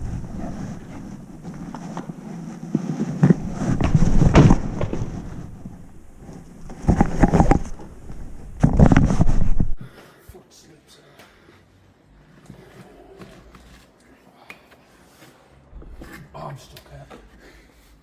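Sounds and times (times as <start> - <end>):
wind rumble on microphone: 0.0 - 1.7
knocks and crunches: 0.0 - 9.8.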